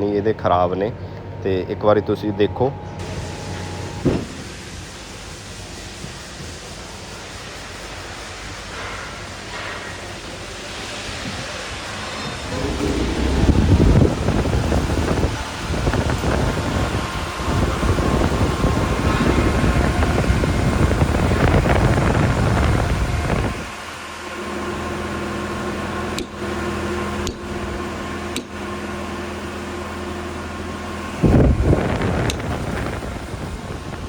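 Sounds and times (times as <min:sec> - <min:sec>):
fans running: 0:00.0 - 0:05.3, 0:11.6 - 0:34.0
steady hum: 0:12.4 - 0:16.4
wind on microphone: 0:12.4 - 0:23.7, 0:31.2 - 0:34.0.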